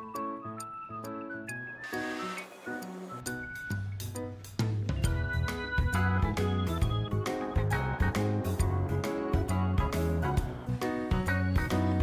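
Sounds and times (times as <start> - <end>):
background music with beat and guitar: 3.2 - 12.0.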